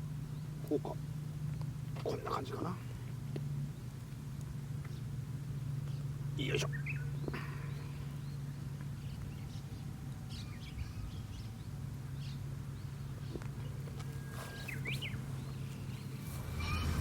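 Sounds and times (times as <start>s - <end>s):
low outdoor hum: 0.0s - 17.0s
bird chirps: 4.8s - 17.0s.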